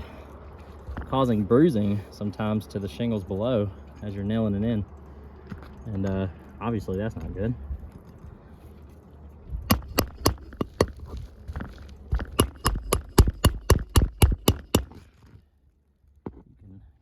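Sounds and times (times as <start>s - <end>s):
hammer driving nails into shingles: 9.7s - 11.2s, 12.1s - 15.0s.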